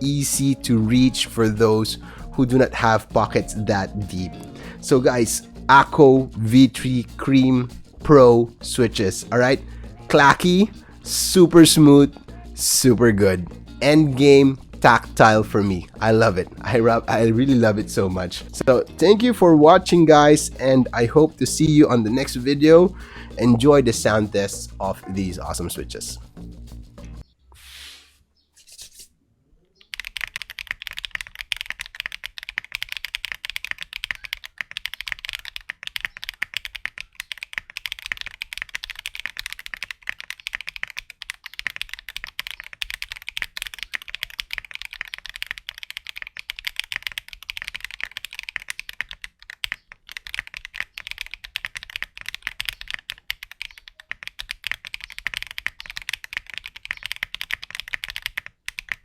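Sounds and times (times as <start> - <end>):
fast typing on mechanical keyboard: 29.8 - 59.0.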